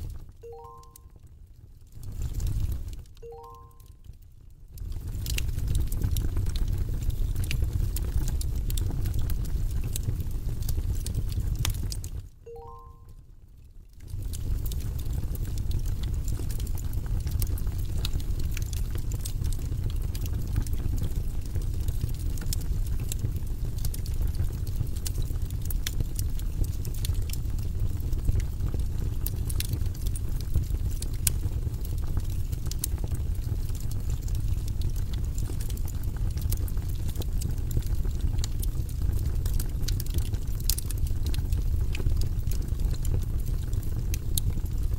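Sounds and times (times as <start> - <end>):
wood crackling and popping: 1.8 - 12.3, 13.8 - 44.9
fire rumbling: 1.9 - 3.2, 4.7 - 12.3, 14.0 - 44.9.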